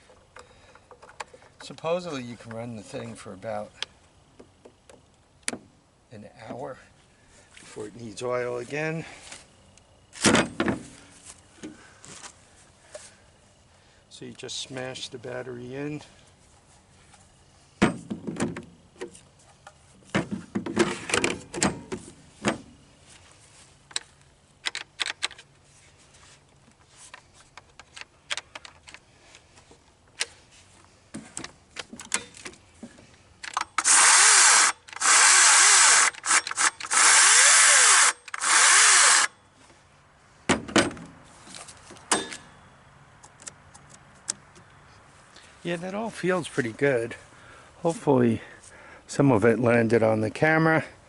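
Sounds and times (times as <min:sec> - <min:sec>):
chainsaw motor whirring: 0:33.6 - 0:39.3.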